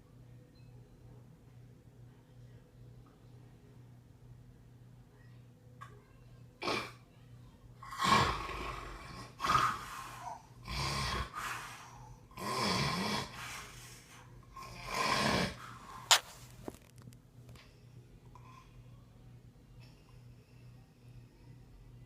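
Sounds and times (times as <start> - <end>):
person snoring: 7.8 - 16.0.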